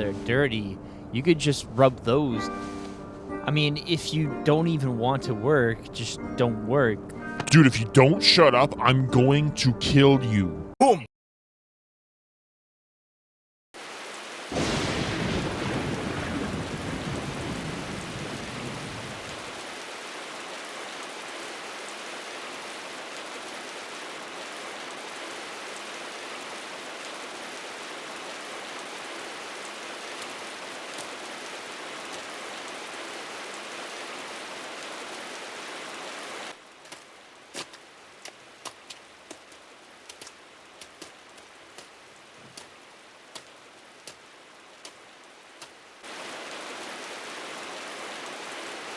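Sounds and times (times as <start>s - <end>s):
heavy rain: 13.8s - 48.9s
thunderclap with low rumble: 14.5s - 19.5s.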